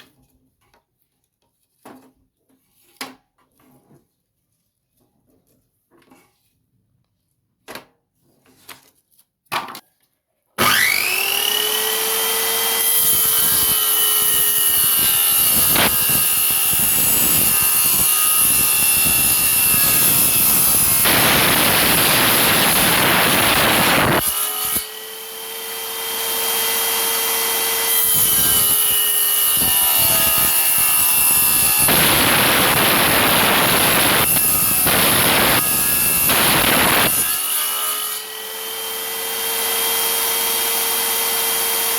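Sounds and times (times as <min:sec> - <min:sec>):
saw rasping through wood: 0:10.6 - 0:41.9
table saw whining: 0:10.6 - 0:41.9.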